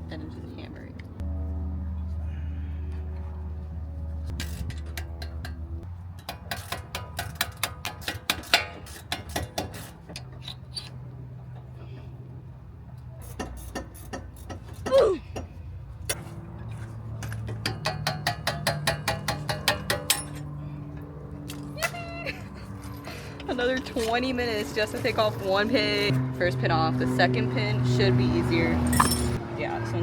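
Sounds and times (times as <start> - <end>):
hammer tapping on metal: 17.6 - 20.4.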